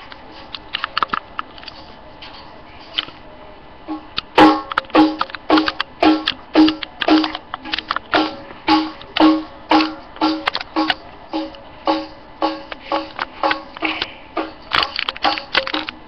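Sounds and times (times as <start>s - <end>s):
music with plucked beat: 3.9s - 16.0s.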